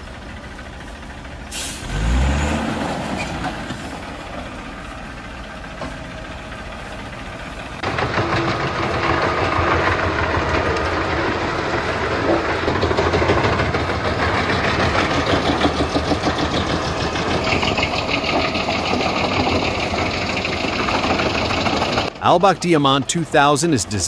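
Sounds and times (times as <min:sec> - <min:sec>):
heavy machine engine rattling: 0:00.0 - 0:24.0.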